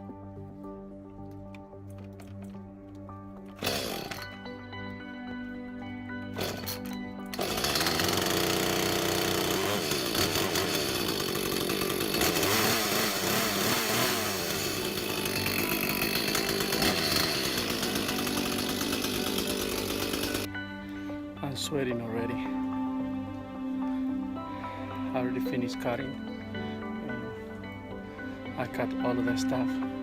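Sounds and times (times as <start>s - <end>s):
background music: 0.0s - 30.0s
chainsaw revving: 3.6s - 4.5s, 6.3s - 20.5s.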